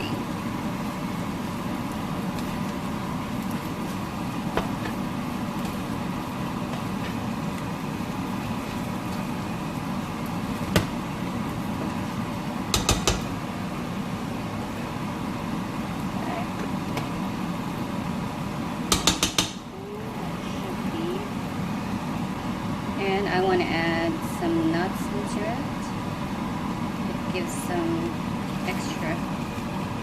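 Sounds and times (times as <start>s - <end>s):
fan-like hum: 0.0s - 30.0s
noodles stir-frying in a pan: 0.0s - 30.0s
utensil knocking on pan: 12.7s - 13.4s, 18.9s - 19.6s.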